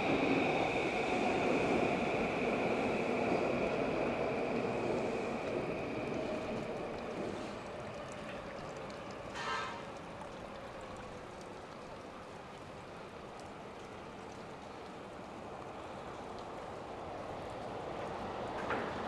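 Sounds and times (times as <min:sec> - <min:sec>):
passing train hum: 0:00.0 - 0:10.8
rain on wet pavement: 0:00.0 - 0:19.0.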